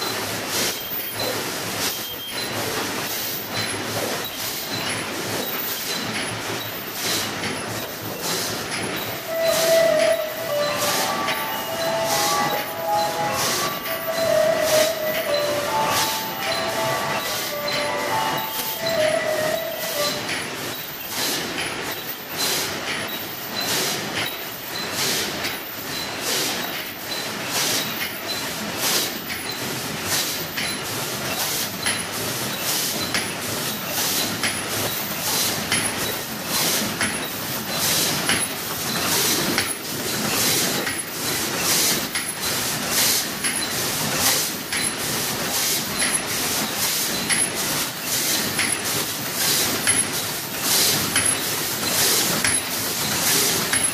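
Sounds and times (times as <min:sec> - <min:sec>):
paper cup machine clattering: 0:41.6 - 0:53.9.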